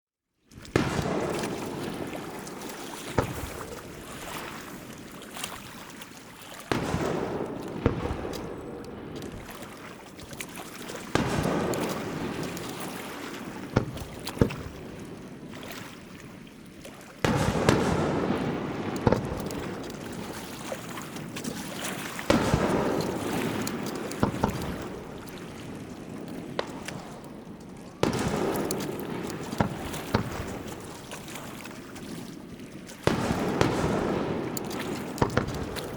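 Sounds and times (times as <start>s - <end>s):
fireworks booming: 0.7s - 4.2s, 6.7s - 9.8s, 11.1s - 15.2s, 17.2s - 21.6s, 22.2s - 31.3s, 33.0s - 35.9s
sharp cracks of fireworks: 0.7s - 5.0s, 6.7s - 15.3s, 17.2s - 35.9s.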